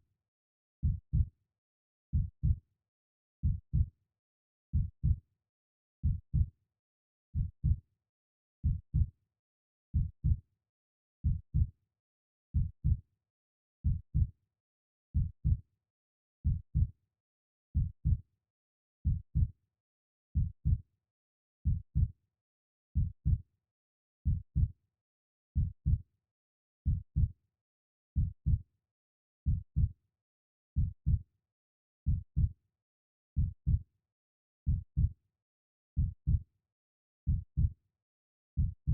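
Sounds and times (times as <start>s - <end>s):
heartbeat thumps: 15.2s - 15.6s, 21.6s - 22.1s, 32.1s - 32.5s, 34.7s - 35.1s, 37.3s - 37.7s, 38.6s - 38.9s.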